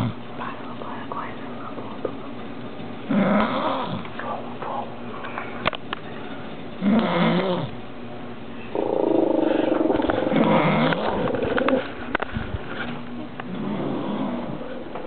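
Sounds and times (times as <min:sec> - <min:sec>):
woman snoring: 0:13.6 - 0:14.6.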